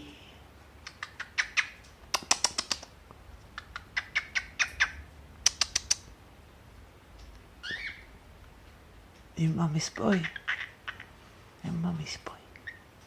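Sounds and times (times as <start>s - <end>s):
bird making sharp clicks: 0.8s - 6.1s.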